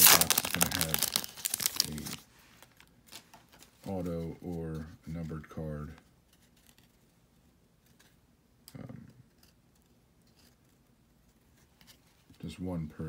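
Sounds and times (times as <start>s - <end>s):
trading cards clicking and rustling: 0.0s - 4.0s.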